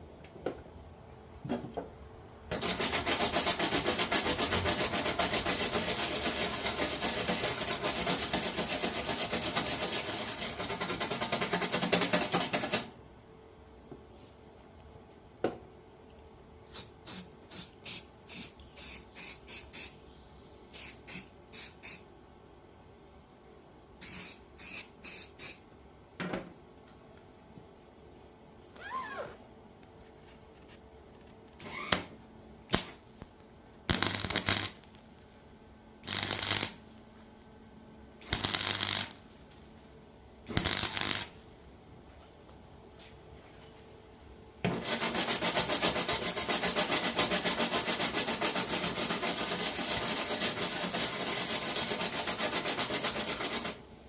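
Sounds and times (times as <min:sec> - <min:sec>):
welder arc crackling: 0:32.7 - 0:33.0, 0:33.9 - 0:35.2, 0:36.0 - 0:36.9, 0:38.2 - 0:39.2, 0:40.5 - 0:41.4.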